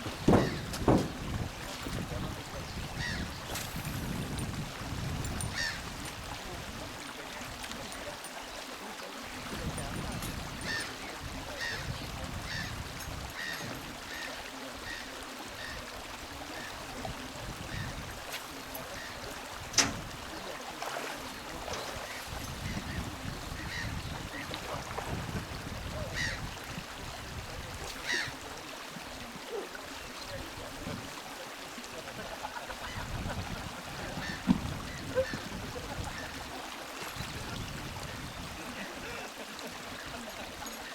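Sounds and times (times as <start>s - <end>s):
bird calling: 0.3s - 1.2s, 3.0s - 3.4s, 28.0s - 28.4s.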